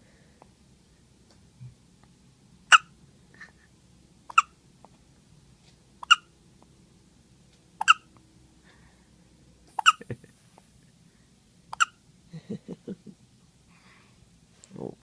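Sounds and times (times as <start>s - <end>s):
baby hiccupping: 2.7s - 2.9s, 4.3s - 4.6s, 6.0s - 6.3s, 7.8s - 8.1s, 9.8s - 10.1s, 11.7s - 12.0s.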